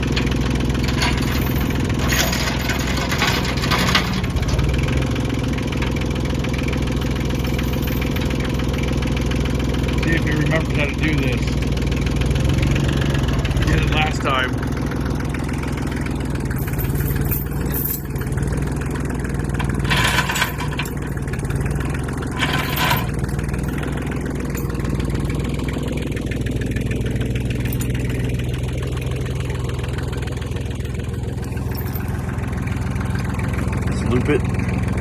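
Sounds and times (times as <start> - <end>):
clatter bursts: 0.0 - 5.0, 19.2 - 25.2
tractor engine idling: 0.0 - 35.0.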